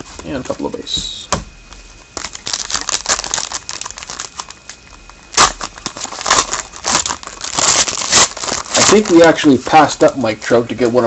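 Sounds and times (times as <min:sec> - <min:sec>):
foil wrapper crinkling and tearing: 0:02.1 - 0:11.0.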